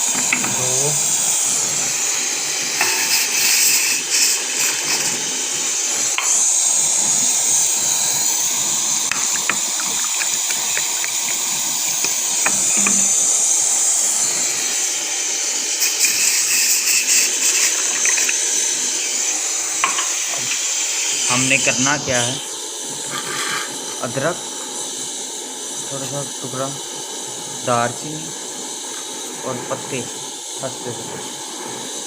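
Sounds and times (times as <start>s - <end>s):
pot of water hissing: 0.0s - 32.0s
utensils clinking: 9.0s - 13.2s, 15.9s - 20.8s.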